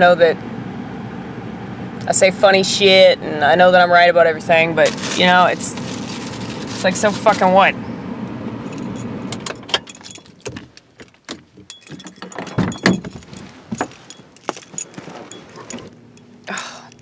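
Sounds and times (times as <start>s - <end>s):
handling clicks and knocks: 4.9s - 7.5s, 8.7s - 16.3s
keys jangling: 4.9s - 7.5s, 8.6s - 10.8s, 11.6s - 17.0s.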